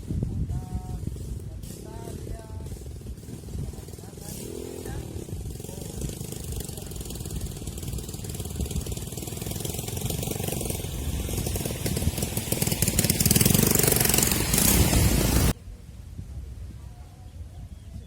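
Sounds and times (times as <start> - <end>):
vehicle engine rattling: 0.0 - 15.6.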